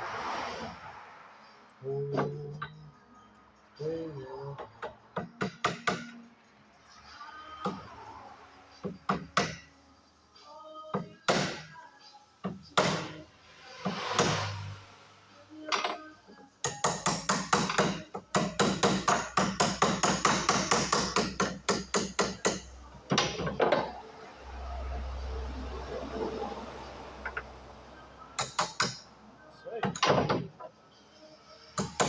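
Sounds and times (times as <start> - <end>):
hammer strikes: 4.8 - 6.2, 8.8 - 9.7, 11.0 - 11.7, 12.5 - 13.2, 13.8 - 14.8, 16.6 - 23.9, 28.4 - 29.1, 31.8 - 32.0.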